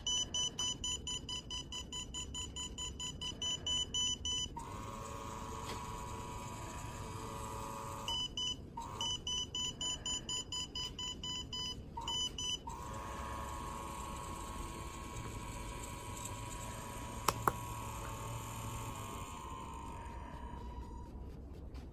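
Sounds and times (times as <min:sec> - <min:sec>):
piezo buzzer beeping: 0:00.0 - 0:20.4
small fan motor whine: 0:00.0 - 0:21.9
sharp clicks: 0:17.2 - 0:17.7.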